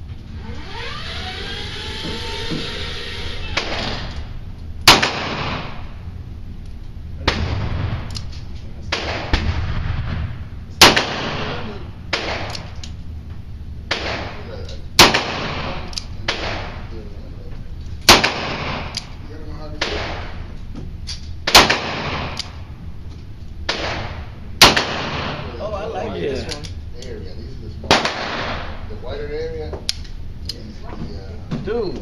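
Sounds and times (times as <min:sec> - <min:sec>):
loud pistol shots: 0:03.6 - 0:05.9, 0:07.2 - 0:08.2, 0:08.9 - 0:12.7, 0:13.9 - 0:16.9, 0:18.1 - 0:19.1, 0:19.8 - 0:20.5, 0:21.4 - 0:22.6, 0:23.7 - 0:25.6, 0:27.9 - 0:28.8
fainter gunshots: 0:04.8 - 0:05.8, 0:07.2 - 0:08.1, 0:08.8 - 0:12.7, 0:13.9 - 0:17.0, 0:18.1 - 0:19.0, 0:19.8 - 0:20.4, 0:21.4 - 0:22.6, 0:23.7 - 0:25.6, 0:27.9 - 0:28.8.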